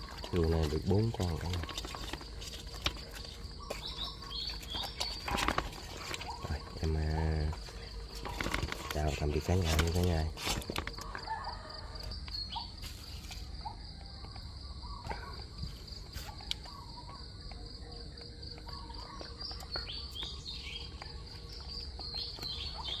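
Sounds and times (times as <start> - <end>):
crickets trilling: 0.0 - 23.0
insect chirping calls: 0.0 - 23.0.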